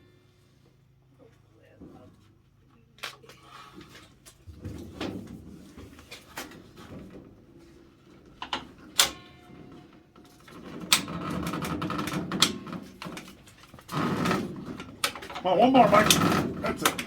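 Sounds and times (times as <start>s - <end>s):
heavy water heater scraping: 13.4s - 17.0s.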